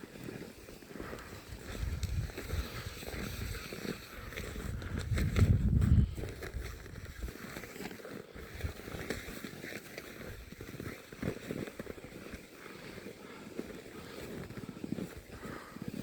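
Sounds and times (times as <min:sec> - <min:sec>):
footsteps crunching in snow: 0:00.0 - 0:16.0
wind rumble on microphone: 0:01.6 - 0:07.4.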